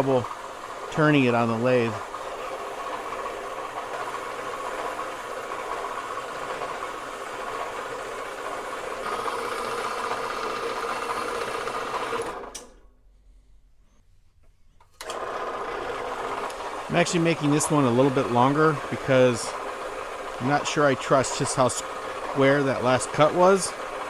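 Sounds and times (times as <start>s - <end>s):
bandsaw cutting steel: 0.0s - 6.6s, 9.0s - 12.6s, 15.8s - 24.0s.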